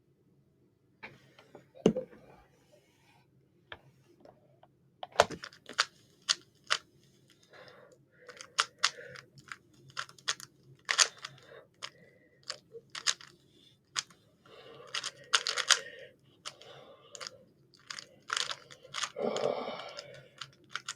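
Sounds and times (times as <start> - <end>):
rubik's cube turning clicks: 5.5 - 6.8, 8.3 - 13.3, 14.9 - 19.2, 19.8 - 20.9.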